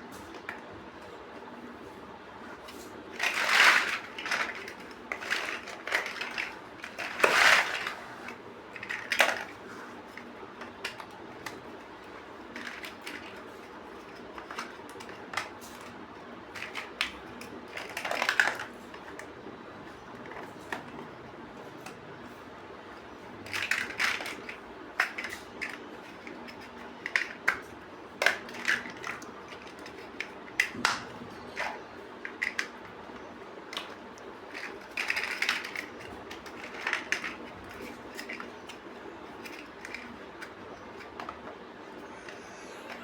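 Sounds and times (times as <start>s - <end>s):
plastic bricks clicking: 3.2s - 11.7s, 23.4s - 41.4s.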